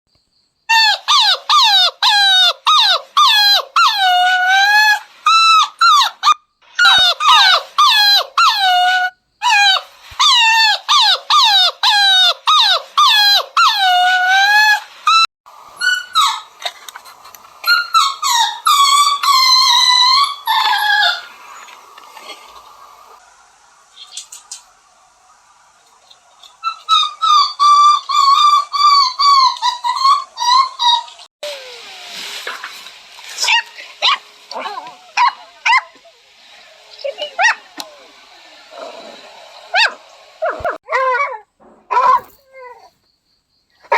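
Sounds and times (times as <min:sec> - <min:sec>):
puppy yelping and whining: 0:00.7 - 0:16.6, 0:17.6 - 0:21.3, 0:26.5 - 0:32.4, 0:33.4 - 0:43.0.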